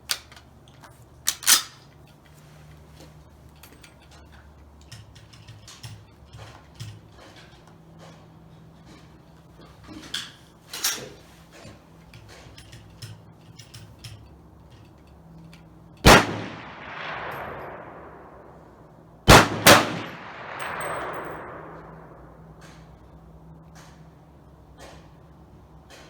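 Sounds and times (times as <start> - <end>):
rifle handling clicks: 0.0 - 2.4, 12.1 - 18.0, 19.3 - 22.8
rifle shots with rolling echo: 16.0 - 22.6.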